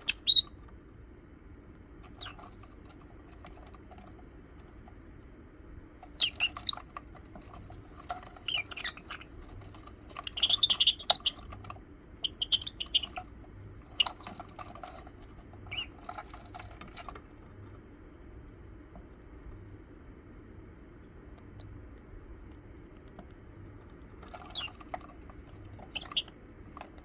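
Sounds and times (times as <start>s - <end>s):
lovebirds chirping and squeaking: 0.0s - 0.6s, 2.2s - 2.6s, 6.1s - 6.9s, 8.0s - 16.9s, 24.3s - 26.3s.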